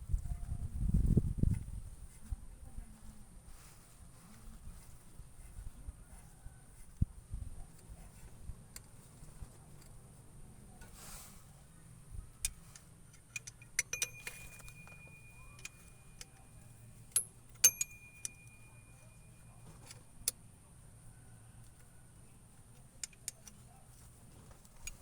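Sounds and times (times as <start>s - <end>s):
metal tools clinking on metal: 12.5s - 20.1s.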